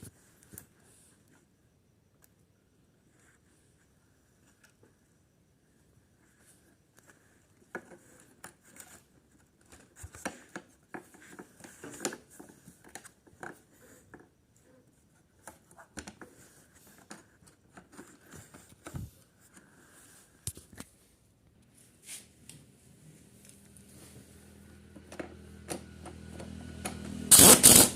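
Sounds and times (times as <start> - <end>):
spanner clicks and scrapes: 25.2 - 27.9.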